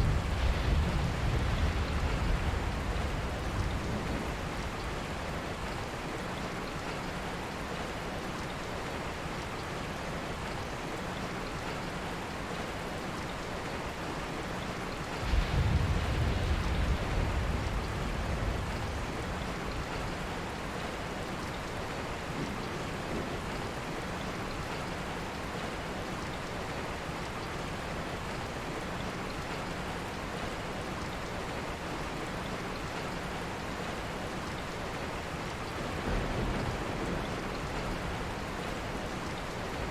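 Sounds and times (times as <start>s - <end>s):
low rumble of thunder: 0.0s - 6.0s, 15.1s - 21.6s, 35.6s - 39.9s
steady rain: 0.0s - 39.9s.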